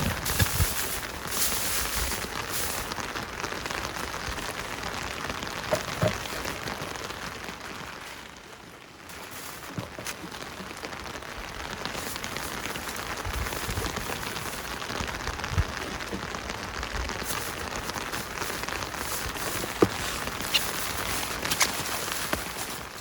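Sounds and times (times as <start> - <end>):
steady rain falling: 0.0 - 23.0.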